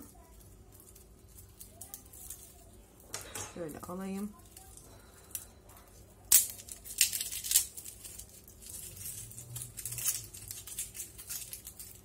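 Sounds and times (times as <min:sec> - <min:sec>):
papery garlic skin crackling: 0:00.0 - 0:12.0
garlic clove cracking off bulb: 0:06.2 - 0:08.2.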